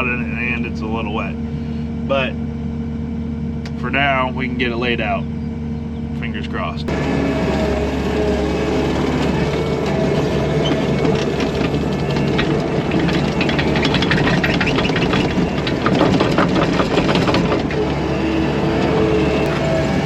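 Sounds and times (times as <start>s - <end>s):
loader engine running: 0.0s - 20.0s
rapid clanking and rattling: 6.9s - 20.0s.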